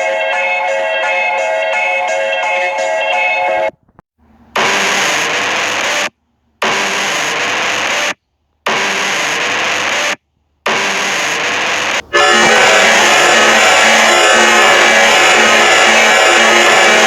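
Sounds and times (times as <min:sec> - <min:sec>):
harsh static-like alarm blasts: 0:04.6 - 0:17.0.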